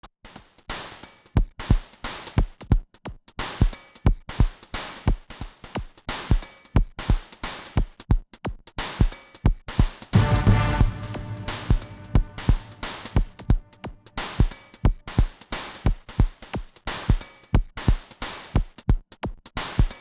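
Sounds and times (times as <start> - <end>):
deep kick drums: 10.2 - 13.7.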